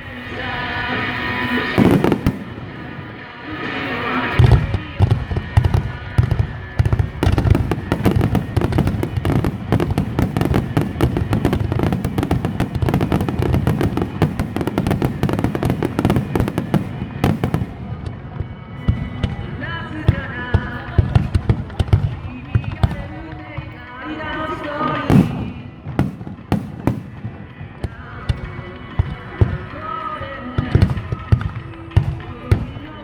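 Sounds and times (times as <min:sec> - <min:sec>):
music from loudspeakers: 0:00.0 - 0:17.8
fireworks bangs and cracks: 0:00.9 - 0:33.0
fireworks boom: 0:04.4 - 0:18.2.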